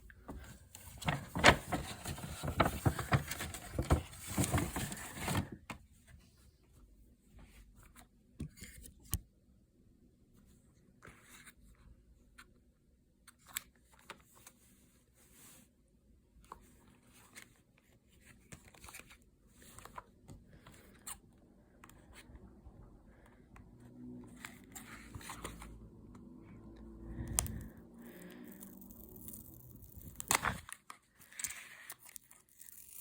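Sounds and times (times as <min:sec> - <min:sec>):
packaging rustling and crackling: 0:00.8 - 0:05.6.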